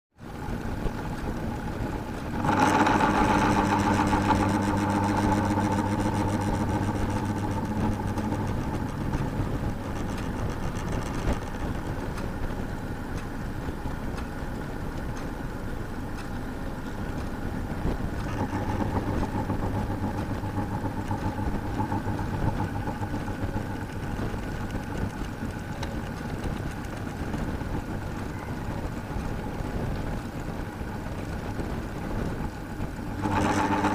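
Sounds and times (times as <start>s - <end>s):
electric fan motor hum: 0.2s - 33.9s
fan rubbing scraping noise: 0.4s - 12.2s, 17.6s - 33.9s.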